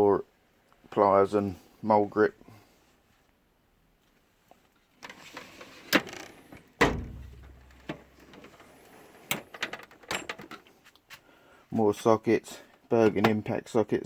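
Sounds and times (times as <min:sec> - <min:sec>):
drawer shutting with loud bang: 0:06.8 - 0:08.0.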